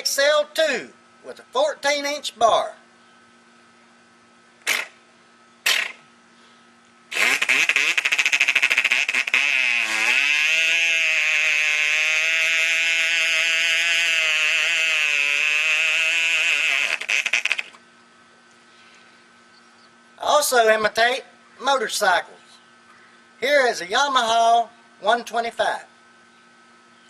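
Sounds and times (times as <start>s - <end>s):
man imitating a chainsaw: 4.6s - 5.0s, 7.1s - 17.8s.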